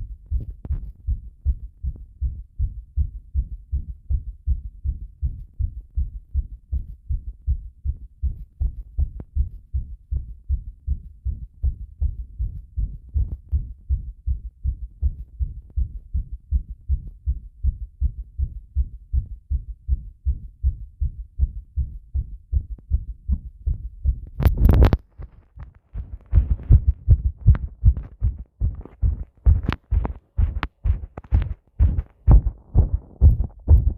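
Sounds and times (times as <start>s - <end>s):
heartbeat thumps: 0.0s - 33.9s
microphone scraping against skin: 24.3s - 33.9s.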